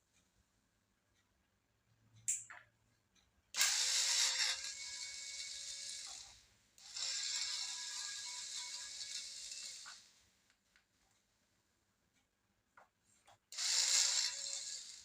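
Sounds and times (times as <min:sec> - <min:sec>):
electric screwdriver whining: 0:03.6 - 0:10.1, 0:13.6 - 0:15.0.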